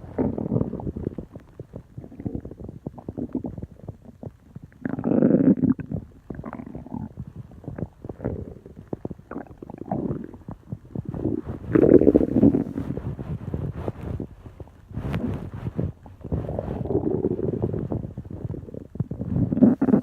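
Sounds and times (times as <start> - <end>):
stomach rumble: 0.0 - 20.0
stomach pops and clicks: 0.1 - 14.3.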